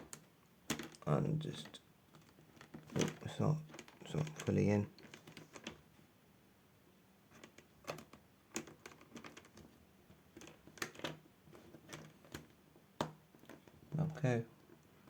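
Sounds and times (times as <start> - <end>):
plastic clicks and taps: 11.9 - 13.7.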